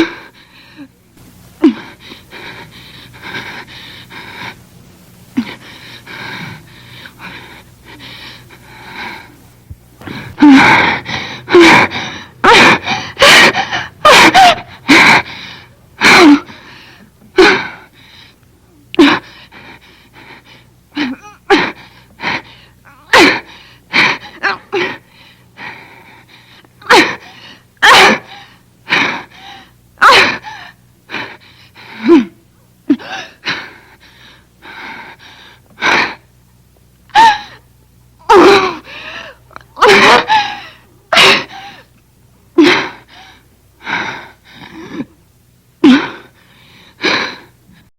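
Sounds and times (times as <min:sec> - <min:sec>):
woman sobbing and wailing: 0:01.6 - 0:02.6, 0:10.4 - 0:15.3, 0:21.0 - 0:25.0, 0:26.8 - 0:29.3, 0:30.0 - 0:32.3, 0:38.3 - 0:41.9
gasping shuddering breaths: 0:05.4 - 0:18.4.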